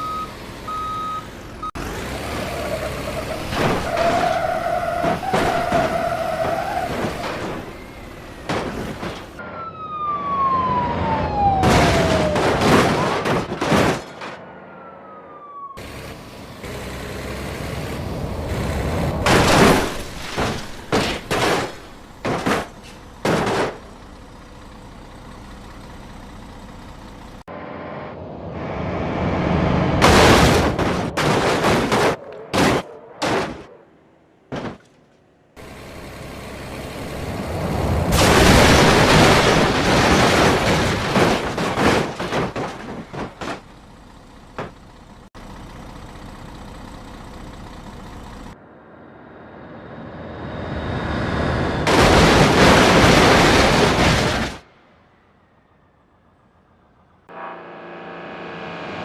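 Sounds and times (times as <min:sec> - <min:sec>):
siren-like wail falling in pitch: 0:09.4 - 0:12.6, 0:14.5 - 0:15.8.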